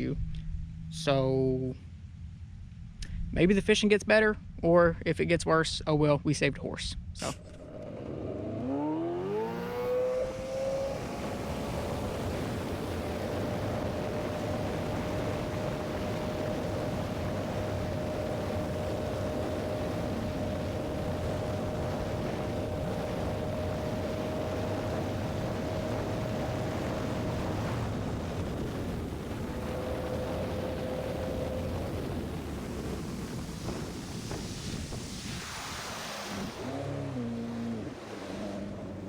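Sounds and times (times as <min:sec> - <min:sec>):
electric motor whine: 0:07.5 - 0:34.3
wind on microphone: 0:08.0 - 0:39.0
rushing sound falling in pitch: 0:08.1 - 0:11.5.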